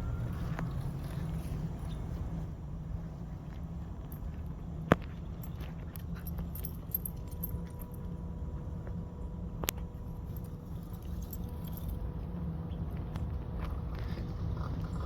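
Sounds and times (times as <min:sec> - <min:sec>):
light jingling clicks: 0:04.0 - 0:08.0.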